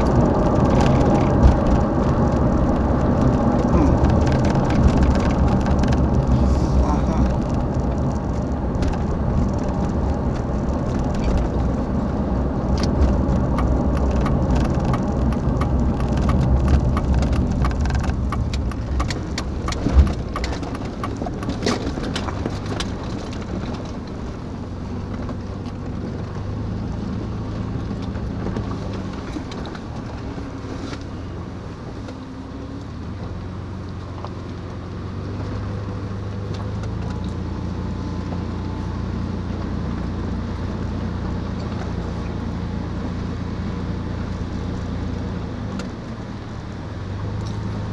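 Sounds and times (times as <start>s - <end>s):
clicks and rattles: 0.0s - 6.4s, 12.7s - 24.2s.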